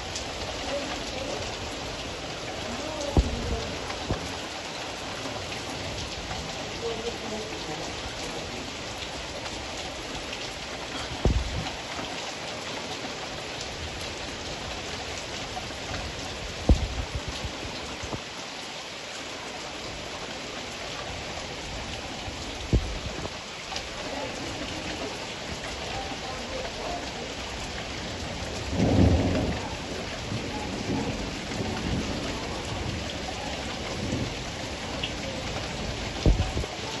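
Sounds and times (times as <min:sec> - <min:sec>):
low rumble of thunder: 0:00.0 - 0:10.2, 0:10.9 - 0:11.8, 0:13.8 - 0:18.3, 0:21.2 - 0:23.4, 0:27.5 - 0:37.0
heavy rain: 0:00.0 - 0:37.0
sharp thunder cracks: 0:03.1 - 0:04.3.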